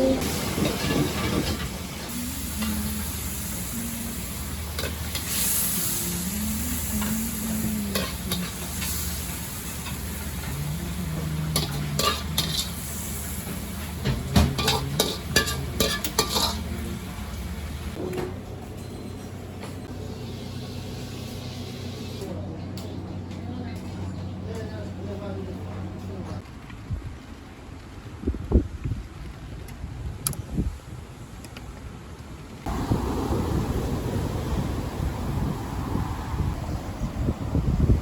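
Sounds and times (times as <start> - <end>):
steady sizzle: 0.2 - 18.0
ladle scraping in a wok: 7.9 - 16.8.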